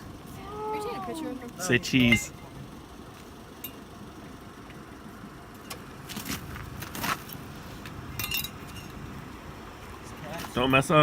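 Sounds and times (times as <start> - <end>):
low steady rumble: 0.0 - 11.0
metallic jangles and clinks: 8.2 - 8.9.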